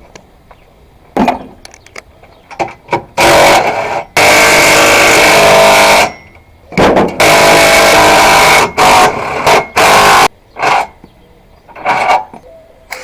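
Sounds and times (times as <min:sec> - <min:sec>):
power tool buzzing bursts: 0:03.2 - 0:06.1, 0:07.2 - 0:10.3.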